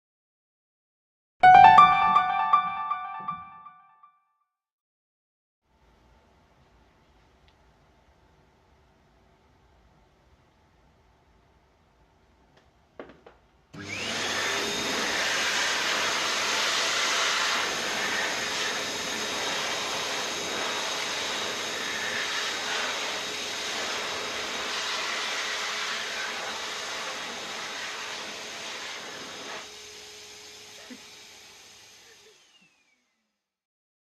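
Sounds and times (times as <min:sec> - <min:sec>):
rush of air from hand dryer: 0:13.8 - 0:29.6.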